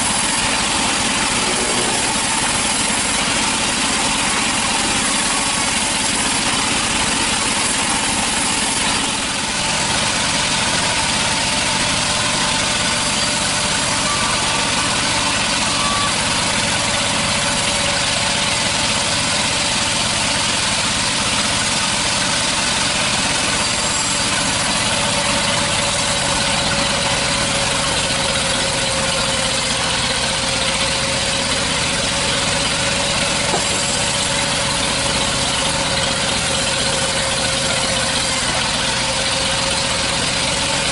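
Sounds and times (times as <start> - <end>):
sawmill machinery running: 0.0 - 40.9
faint held tone: 13.0 - 16.6.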